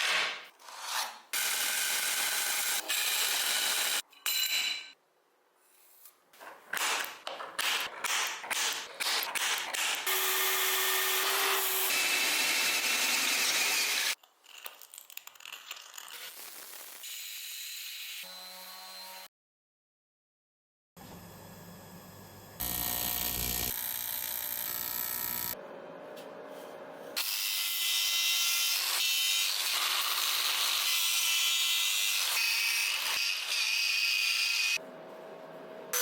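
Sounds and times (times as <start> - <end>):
power tool grinding: 10.1 - 14.2.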